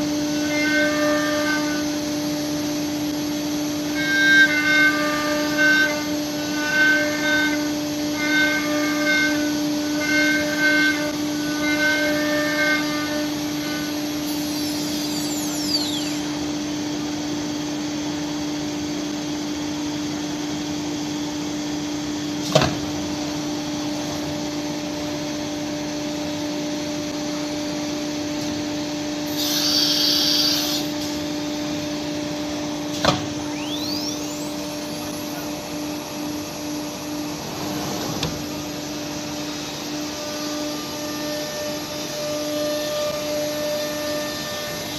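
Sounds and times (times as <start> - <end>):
router machine hum: 0.0 - 44.9
vacuum noise: 12.3 - 44.9
air hiss: 29.3 - 31.2.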